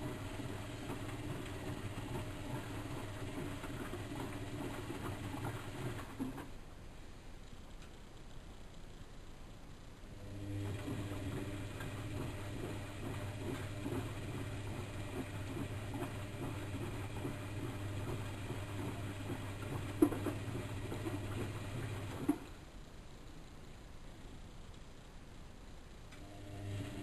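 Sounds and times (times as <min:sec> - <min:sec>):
laundry tumbling knocks and clicks: 0:00.0 - 0:06.5, 0:10.8 - 0:22.6
washing machine motor hum: 0:00.0 - 0:06.6, 0:10.1 - 0:22.7, 0:26.1 - 0:27.0.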